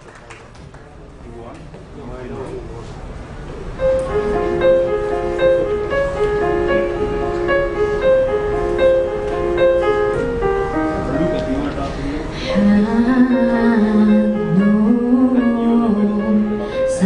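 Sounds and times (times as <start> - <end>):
piano playing: 3.7 - 17.0.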